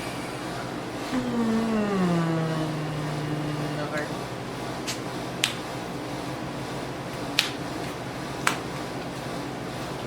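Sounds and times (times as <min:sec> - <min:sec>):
room hum: 0:00.0 - 0:10.0.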